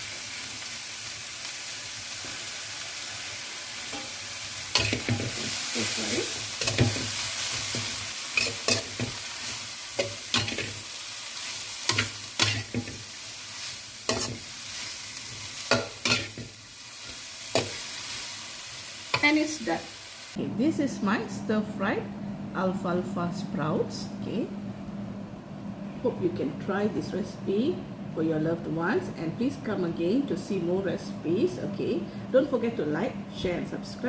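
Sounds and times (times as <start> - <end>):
food sizzling in oil: 0.0 - 20.4.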